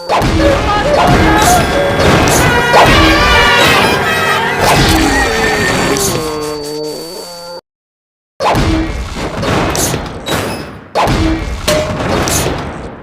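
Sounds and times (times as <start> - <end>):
cartoon crashing impacts: 0.0 - 6.2.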